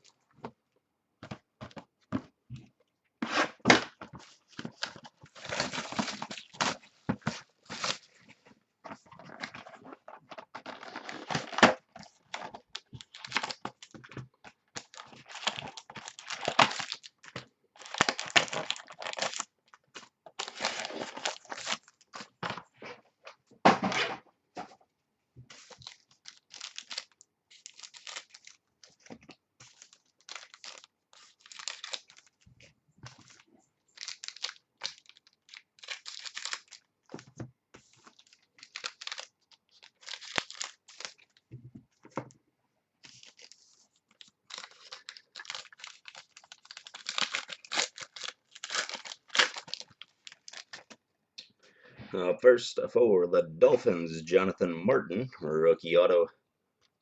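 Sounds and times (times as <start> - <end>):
wrapper tearing and crinkling: 4.7 - 6.9, 10.6 - 13.9, 14.8 - 19.5, 20.4 - 22.3, 25.6 - 28.9, 29.6 - 32.4, 33.2 - 36.9, 38.0 - 41.4, 43.1 - 51.0.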